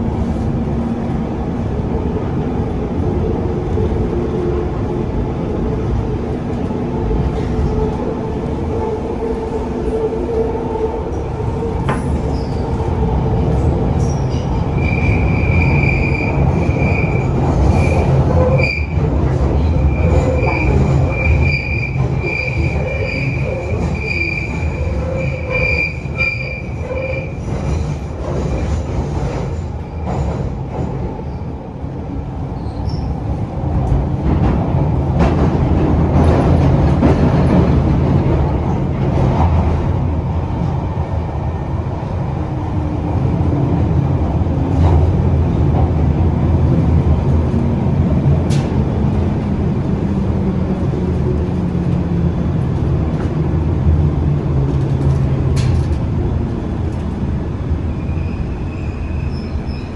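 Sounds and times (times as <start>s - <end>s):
train rumbling in tunnel: 0.0s - 59.9s
train wheels squealing: 11.9s - 12.8s, 14.0s - 31.5s, 32.6s - 33.3s, 57.8s - 59.9s.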